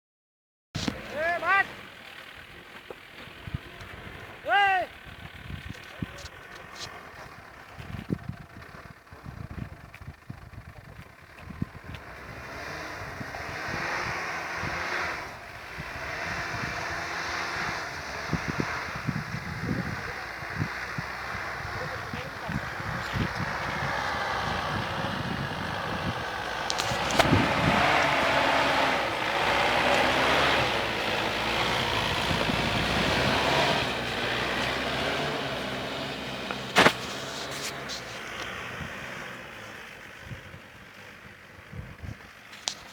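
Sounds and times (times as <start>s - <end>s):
diesel engine under load: 0.8s - 42.9s
tyre and wind rushing noise: 11.4s - 39.5s.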